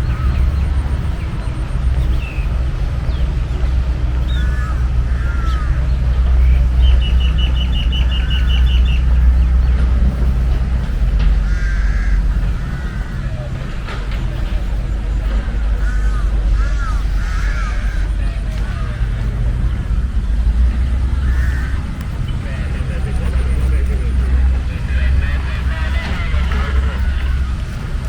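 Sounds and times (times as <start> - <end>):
rapid high bird notes: 0.0 - 20.2
birds chirping: 0.0 - 28.0
distant traffic rumble: 0.0 - 28.0.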